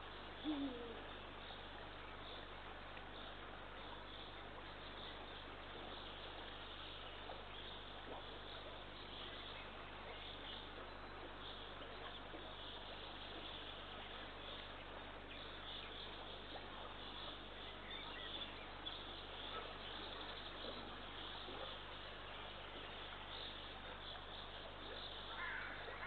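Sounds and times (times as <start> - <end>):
microphone hiss: 0.0 - 7.9
faint high bird calls: 0.4 - 1.1.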